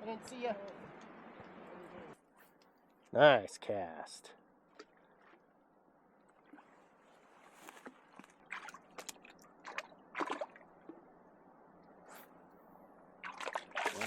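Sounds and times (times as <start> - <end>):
water splashing and sloshing: 4.6 - 14.0
creek water running: 6.3 - 11.1, 13.2 - 14.0.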